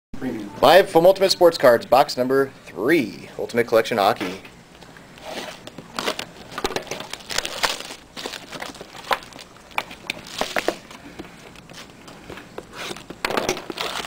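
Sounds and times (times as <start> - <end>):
plastic wrapping crinkling: 5.2 - 14.0.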